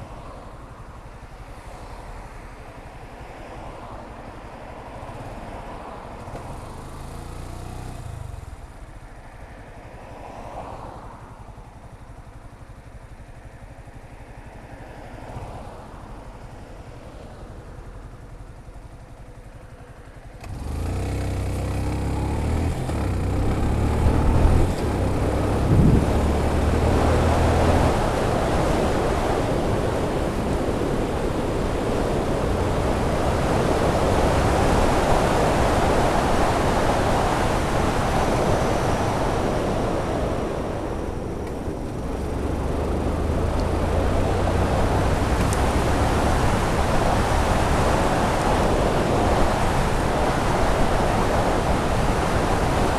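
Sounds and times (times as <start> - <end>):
motorcycle engine: 18.4 - 52.9
wind noise on microphone: 22.5 - 42.2, 43.2 - 52.9.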